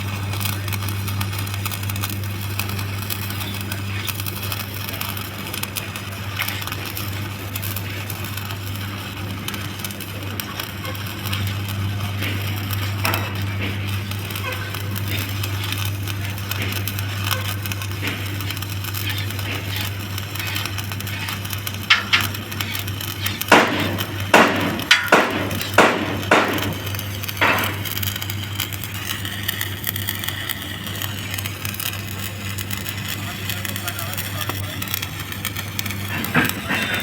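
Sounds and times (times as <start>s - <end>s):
welder humming: 0.0s - 37.0s
sharp metallic knocks and clinks: 21.9s - 22.4s, 23.5s - 27.9s.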